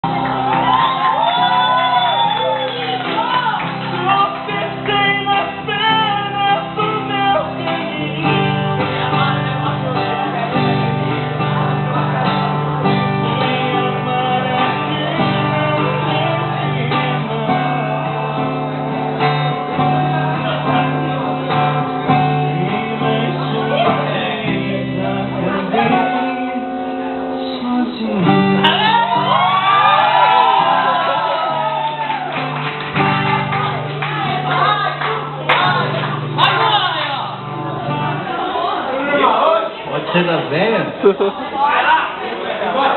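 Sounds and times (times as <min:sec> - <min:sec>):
people shouting and whooping: 0:00.0 - 0:05.1, 0:28.6 - 0:39.6
song with plucked guitar: 0:00.0 - 0:38.9.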